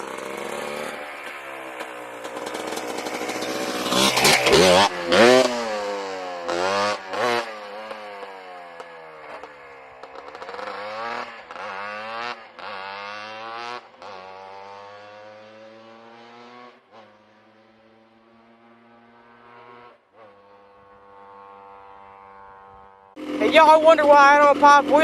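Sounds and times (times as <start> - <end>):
two-stroke engine revving: 0.0 - 25.0.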